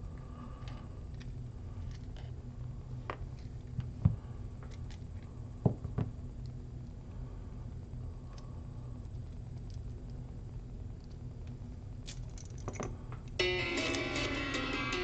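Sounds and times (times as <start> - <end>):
steady low hum: 0.0 - 15.0
metal padlock cylinders clicking: 12.0 - 13.4.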